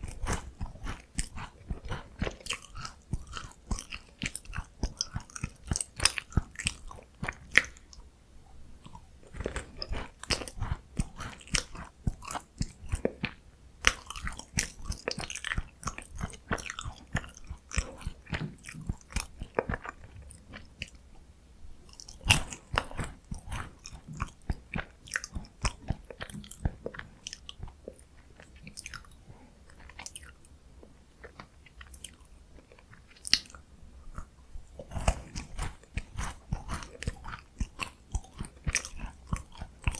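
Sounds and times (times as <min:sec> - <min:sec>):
chewing crunchy biscuits: 0:00.0 - 0:08.1, 0:08.8 - 0:21.2, 0:21.8 - 0:39.9.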